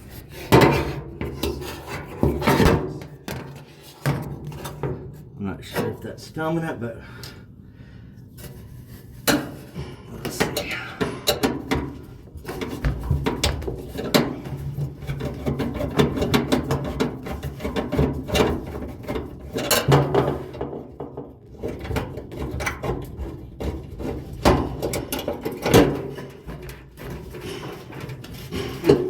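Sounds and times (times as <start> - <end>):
hand tools and metal parts clanking: 9.2 - 29.0.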